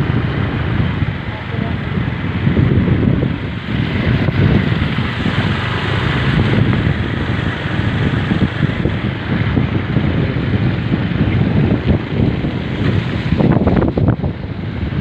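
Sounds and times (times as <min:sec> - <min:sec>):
water churning: 0:00.0 - 0:15.0
wind buffeting microphone: 0:00.0 - 0:15.0.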